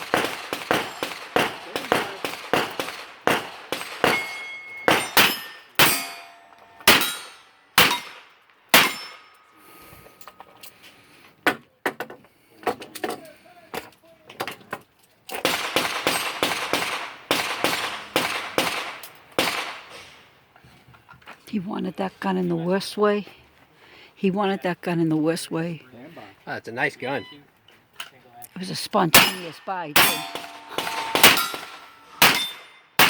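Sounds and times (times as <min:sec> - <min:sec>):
steel plate clanging: 0:03.8 - 0:08.2, 0:08.8 - 0:09.4, 0:29.1 - 0:33.0.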